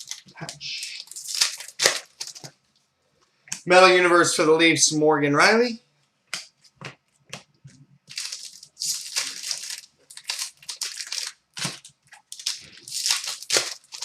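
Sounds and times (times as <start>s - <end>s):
foil wrappers crinkling: 0.0s - 2.5s, 8.1s - 14.0s.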